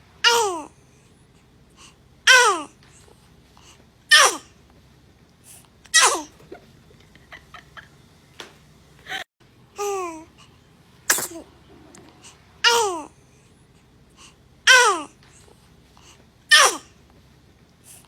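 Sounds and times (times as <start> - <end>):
baby sneezing: 4.1 - 4.5, 6.0 - 6.4, 11.1 - 11.5, 12.6 - 13.1, 16.5 - 16.9.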